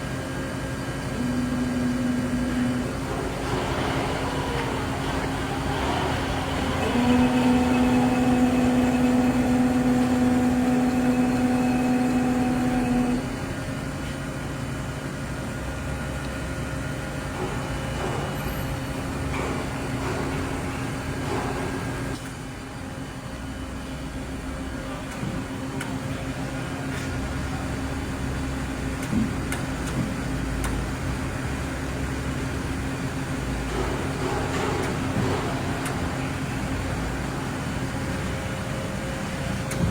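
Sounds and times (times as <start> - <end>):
lathe machine hum: 0.0 - 14.7, 30.3 - 39.9
loud steady machine whine: 0.0 - 39.9.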